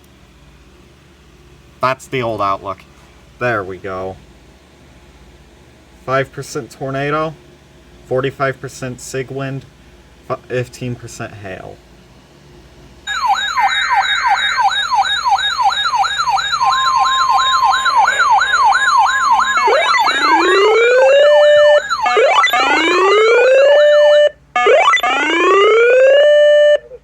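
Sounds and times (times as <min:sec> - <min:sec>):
electronic siren yelping and wailing: 0:13.1 - 0:27.0.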